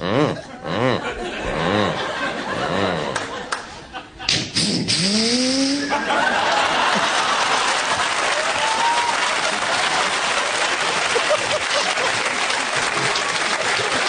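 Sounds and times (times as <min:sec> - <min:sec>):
audience applauding: 0:06.0 - 0:14.0.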